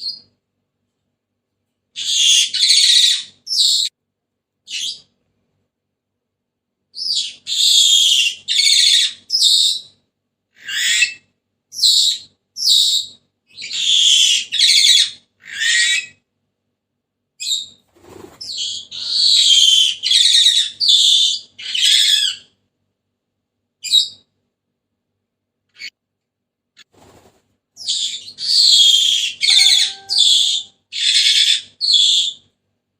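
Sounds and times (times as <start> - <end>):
parrot high-pitched calls: 2.0 - 3.9, 7.0 - 9.9, 10.6 - 16.2, 18.5 - 22.5, 27.8 - 32.4.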